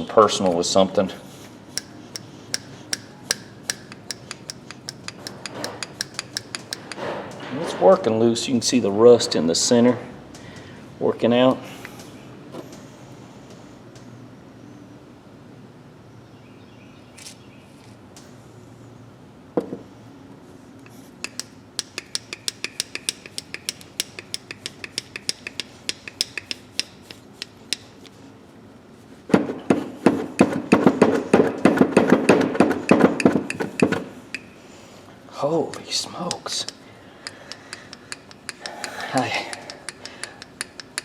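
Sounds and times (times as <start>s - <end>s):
scraping in pliers joint: 1.8s - 8.1s, 20.8s - 28.2s, 35.7s - 41.0s.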